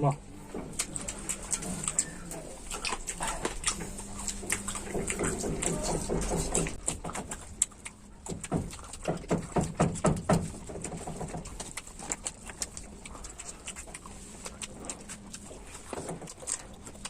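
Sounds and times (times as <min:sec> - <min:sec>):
chewing and mouth sounds: 0:00.1 - 0:17.0.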